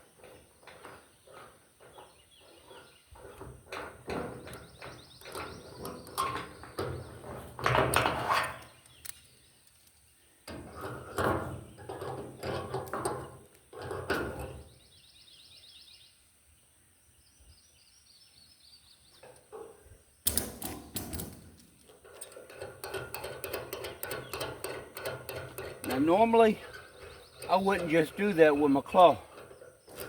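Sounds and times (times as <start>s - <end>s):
rough scraping and knocking: 0.1s - 8.8s, 21.1s - 30.0s
faint rapid bird trill: 23.9s - 30.0s.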